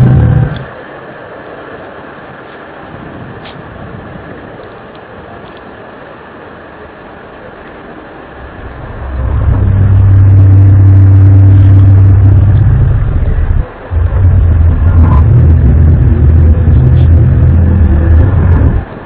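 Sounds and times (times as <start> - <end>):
loud low drone: 0.0 - 0.9, 8.0 - 19.0.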